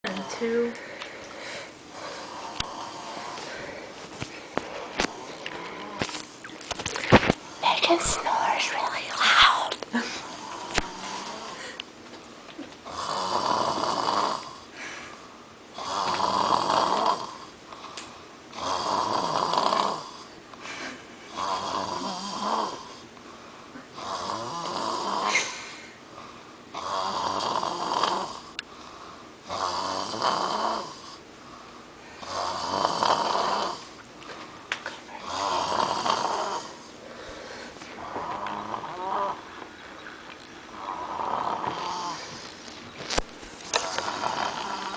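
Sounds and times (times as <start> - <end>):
woman snoring loudly: 1.9 - 3.8, 8.2 - 11.8, 12.8 - 14.7, 15.8 - 17.5, 18.5 - 20.3, 21.3 - 23.0, 24.0 - 25.5, 26.7 - 28.5, 29.5 - 31.2, 32.2 - 34.0, 35.2 - 36.8, 38.0 - 39.4, 40.8 - 42.4, 43.8 - 44.9.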